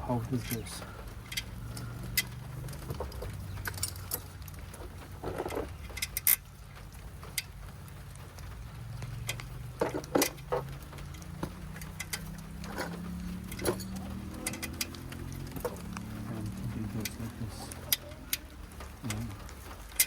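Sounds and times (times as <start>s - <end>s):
clicks and knocks of car parts: 0.4s - 8.6s, 9.2s - 16.1s.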